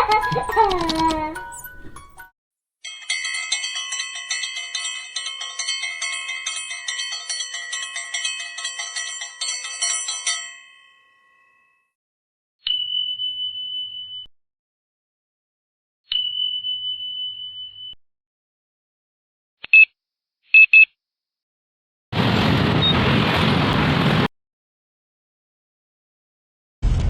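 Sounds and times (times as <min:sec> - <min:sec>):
tinkling bell-like chimes: 0:00.0 - 0:11.9, 0:12.7 - 0:14.3.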